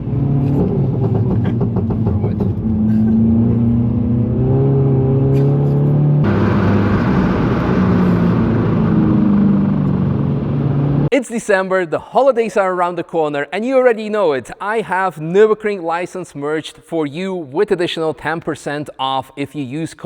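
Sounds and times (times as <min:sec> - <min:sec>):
car engine pulling hard: 0:00.0 - 0:11.1
exhaust crackles: 0:00.0 - 0:11.2.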